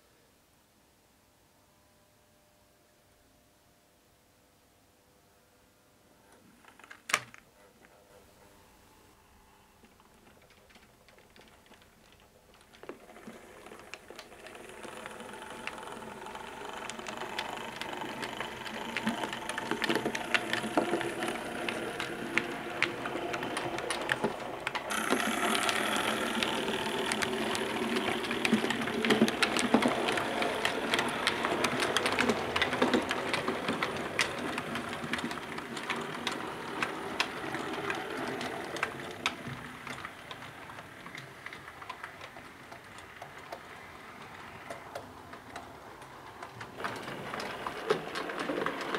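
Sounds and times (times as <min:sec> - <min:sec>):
wheels clicking on track: 0:09.8 - 0:48.9
small motor and gears whirring: 0:12.6 - 0:41.9.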